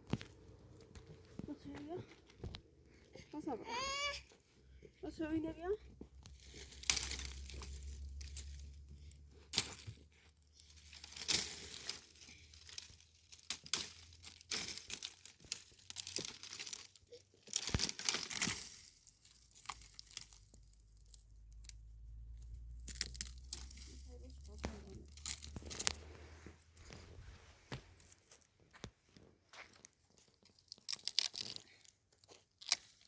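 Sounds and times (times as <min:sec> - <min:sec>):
rustling and crinkling: 0:00.0 - 0:33.0.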